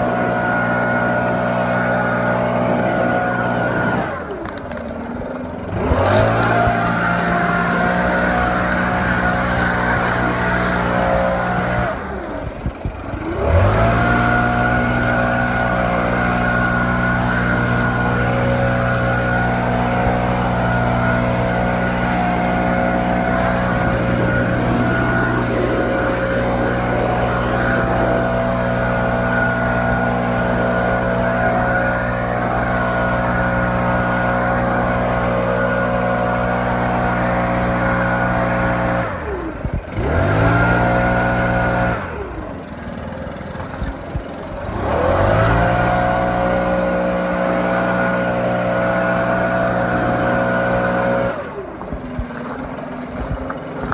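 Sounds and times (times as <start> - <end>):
leaf blower engine at full throttle: 0.0 - 53.9.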